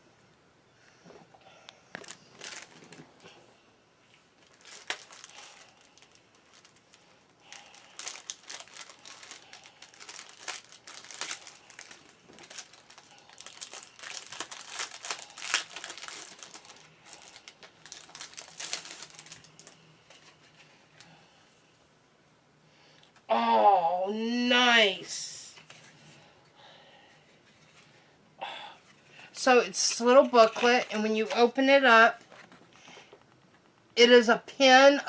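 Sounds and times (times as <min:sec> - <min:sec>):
plastic baggie crinkling: 0:01.9 - 0:03.4, 0:04.4 - 0:20.8, 0:29.4 - 0:33.8.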